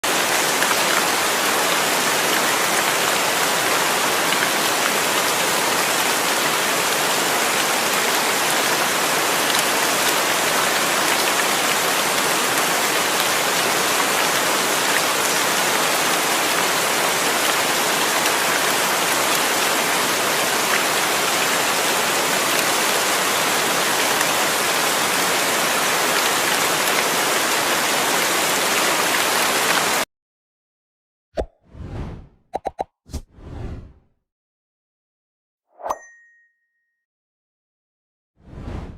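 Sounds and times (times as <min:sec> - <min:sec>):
heavy rain on hard surfaces: 0:00.0 - 0:30.1.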